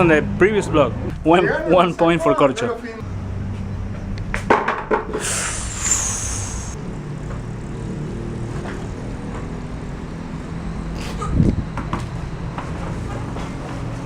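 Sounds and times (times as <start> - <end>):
engine humming: 0.0 - 14.0
high-pitched squeal: 5.2 - 7.0.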